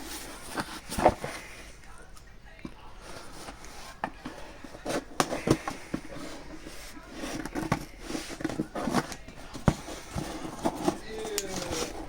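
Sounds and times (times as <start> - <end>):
packaging crinkling and rustling: 3.2 - 12.0.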